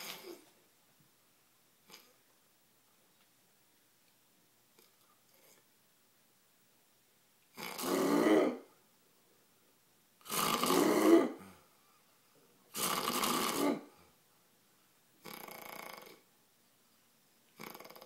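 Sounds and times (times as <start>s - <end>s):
person snoring: 7.6s - 8.7s, 10.2s - 11.6s, 12.7s - 14.0s, 15.2s - 16.2s, 17.6s - 18.0s.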